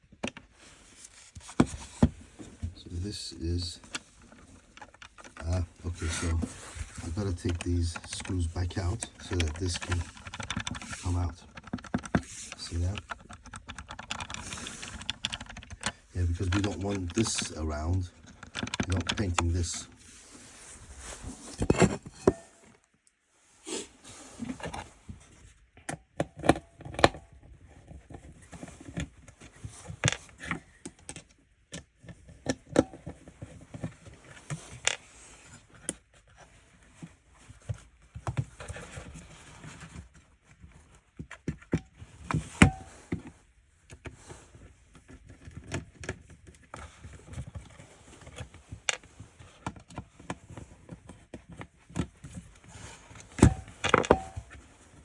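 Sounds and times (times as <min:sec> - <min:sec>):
plastic and metal parts clicking: 0:03.8 - 0:19.9, 0:45.0 - 0:54.6.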